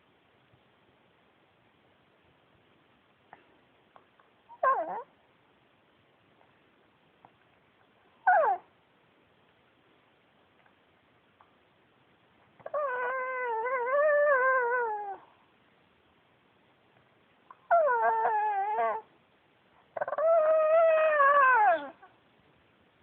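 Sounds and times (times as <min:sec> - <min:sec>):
dog howling whines: 0:04.6 - 0:05.1, 0:08.2 - 0:08.7, 0:12.6 - 0:15.3, 0:17.7 - 0:19.1, 0:20.0 - 0:22.1.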